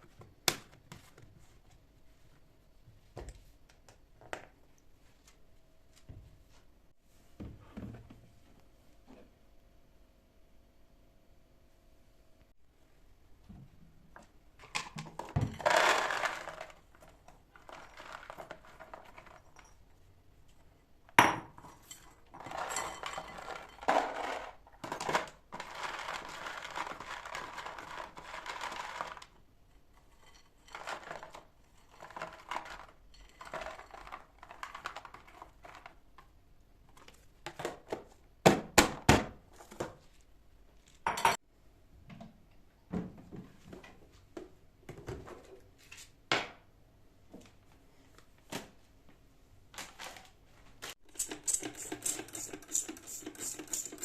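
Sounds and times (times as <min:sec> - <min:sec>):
dishes and cutlery clinking: 0:21.4 - 0:24.1.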